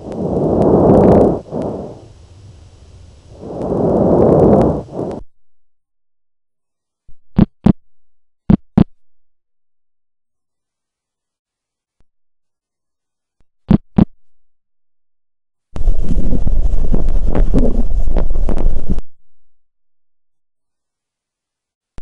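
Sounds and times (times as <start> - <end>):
breath sounds: 0.0 - 5.2.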